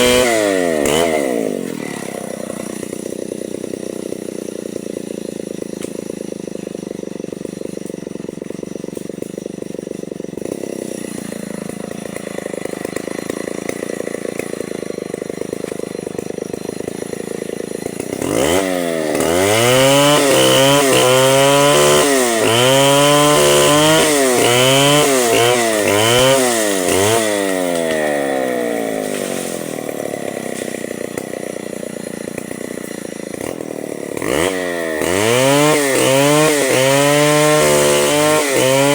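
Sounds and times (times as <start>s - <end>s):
chainsaw cutting wood: 0.0s - 38.9s
chainsaw idling: 0.0s - 38.9s.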